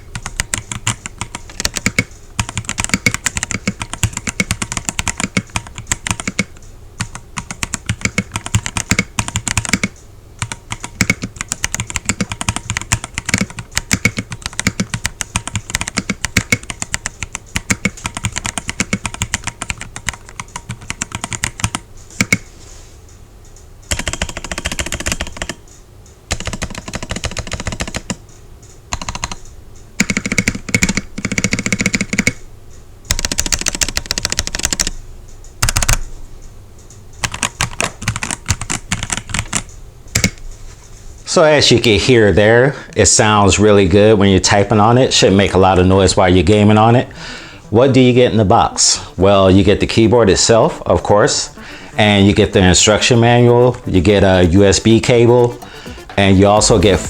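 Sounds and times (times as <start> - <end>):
typing on mechanical keyboard: 0.0 - 22.5, 23.9 - 25.6, 26.3 - 28.2, 28.9 - 29.4, 30.0 - 32.4, 33.1 - 35.0, 35.6 - 36.1, 37.2 - 40.4, 47.4 - 57.0.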